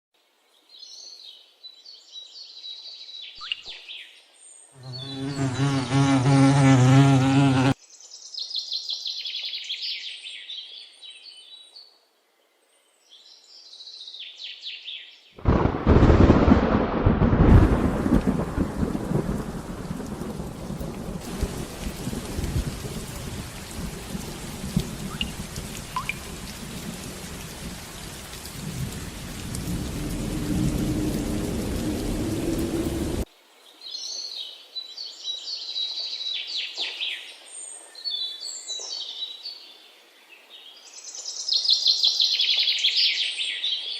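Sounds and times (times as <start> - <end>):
birds chirping: 4.8 - 6.1, 25.0 - 26.8
heavy rain: 15.4 - 33.3
thunder rumble: 15.4 - 33.3.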